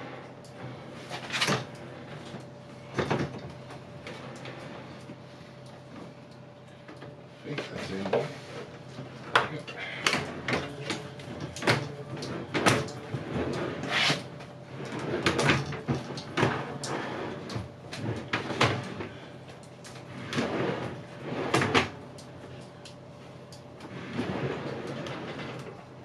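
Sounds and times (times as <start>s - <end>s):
drawers sliding: 10.2s - 19.0s, 20.0s - 21.9s, 23.8s - 25.8s.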